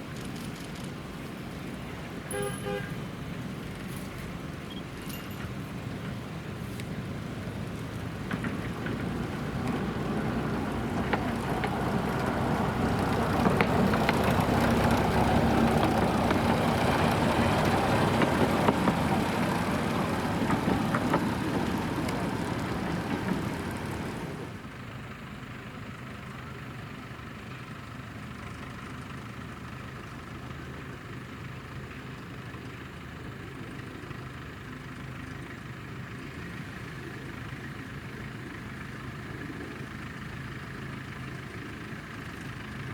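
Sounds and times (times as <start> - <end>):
train engine and wheels: 0.0 - 42.9
engine idling: 0.2 - 42.9.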